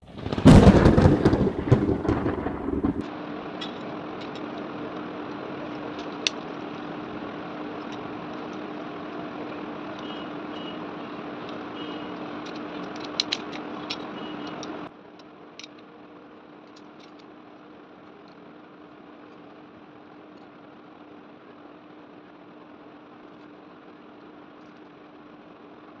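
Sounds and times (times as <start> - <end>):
electric fan humming: 0.0 - 14.9.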